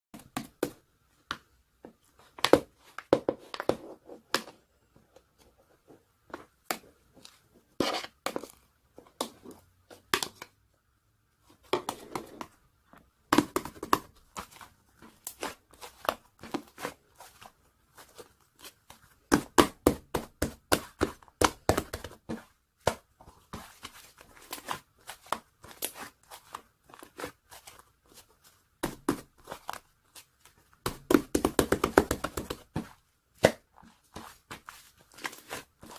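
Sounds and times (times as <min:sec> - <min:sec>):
hands squishing slime: 0:13.4 - 0:35.9.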